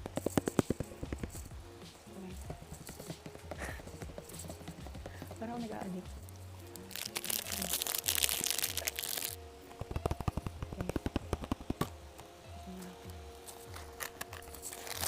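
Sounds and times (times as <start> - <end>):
background music with beat: 0.0 - 15.0
plastic packaging crinkling: 6.2 - 11.9, 13.3 - 15.0.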